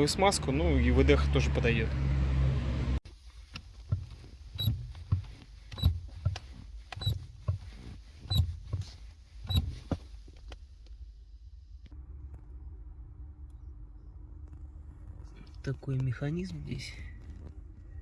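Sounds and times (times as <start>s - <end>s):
brake pedal knock and squeak: 3.4s - 10.5s.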